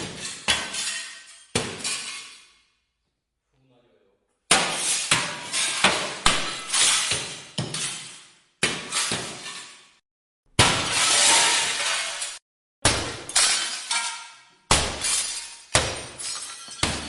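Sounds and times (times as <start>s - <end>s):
glass shattering: 0.0s - 2.6s, 4.5s - 10.0s, 10.6s - 17.0s
tinkling glass shards: 15.1s - 17.0s.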